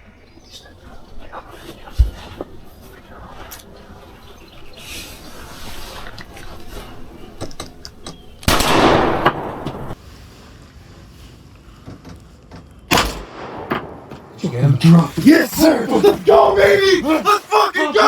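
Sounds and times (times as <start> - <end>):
shotgun blast: 8.4 - 10.0, 12.9 - 14.2.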